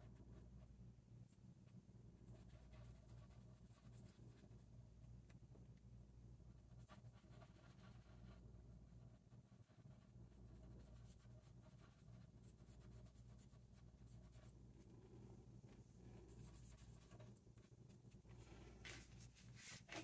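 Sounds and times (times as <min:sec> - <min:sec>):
low steady hum: 0:00.0 - 0:20.0
colouring tool scratching on paper: 0:16.3 - 0:18.1.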